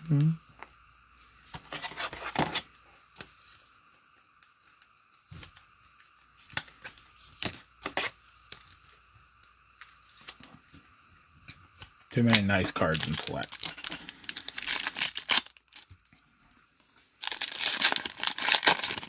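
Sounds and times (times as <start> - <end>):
cards and wrappers rustling: 9.8 - 10.6, 11.7 - 16.1, 17.2 - 19.0.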